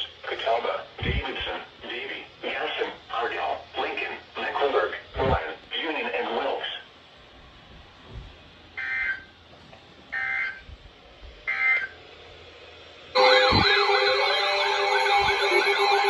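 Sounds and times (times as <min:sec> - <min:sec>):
electronic siren wail: 0:13.2 - 0:16.0
shrill warbling data tones: 0:13.2 - 0:16.0.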